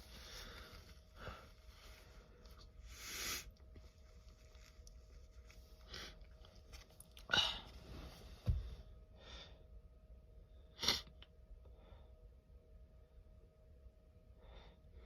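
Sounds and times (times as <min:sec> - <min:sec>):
breathing: 0:00.1 - 0:03.5, 0:09.1 - 0:09.7, 0:11.7 - 0:12.2, 0:14.4 - 0:15.0.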